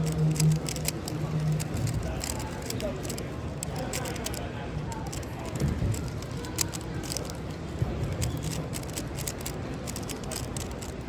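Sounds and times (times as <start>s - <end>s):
faint distant voices: 0.0s - 11.0s.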